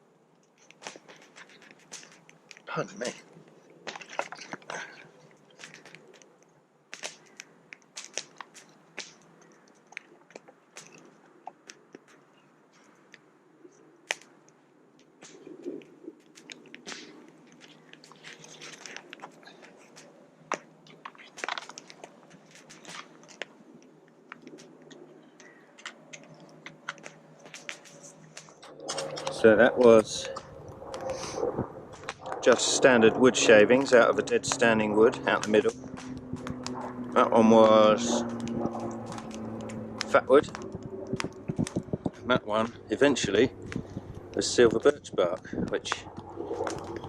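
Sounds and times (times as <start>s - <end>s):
wood fire crackling and popping: 0.0s - 13.2s, 14.0s - 47.0s.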